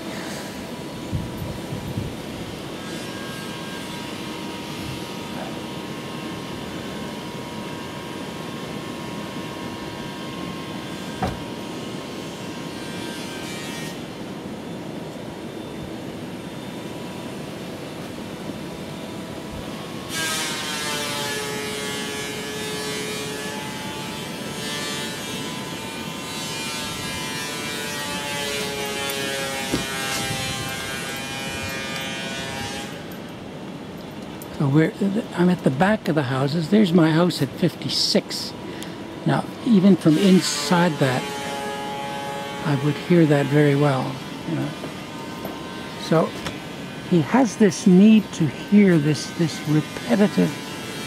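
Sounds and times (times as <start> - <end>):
wood planer humming and whining: 0.0 - 34.5, 38.5 - 51.0
wood being planed: 20.1 - 33.0, 40.1 - 43.9, 48.5 - 51.0.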